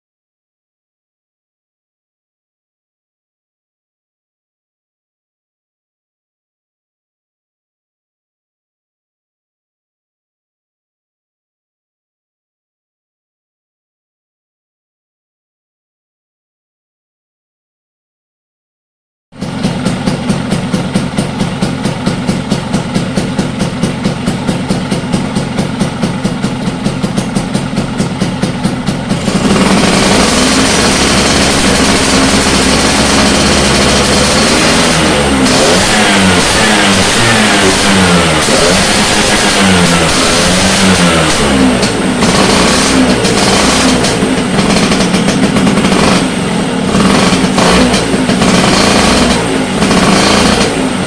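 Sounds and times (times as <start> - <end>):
engine revving: 19.4 - 51.0
two-stroke scooter engine idling: 19.4 - 51.0.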